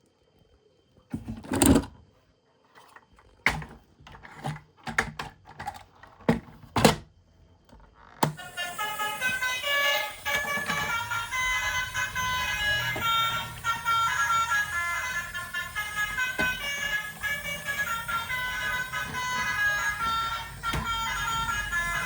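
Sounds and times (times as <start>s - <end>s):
music with held notes: 8.3s - 22.0s.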